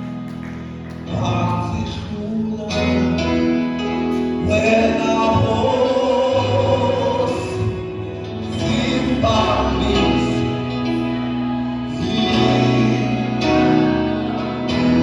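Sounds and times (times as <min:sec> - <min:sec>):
steady bass line: 0:00.0 - 0:15.0
sustained instrumental chords: 0:00.0 - 0:15.0
voices singing together: 0:04.4 - 0:15.0.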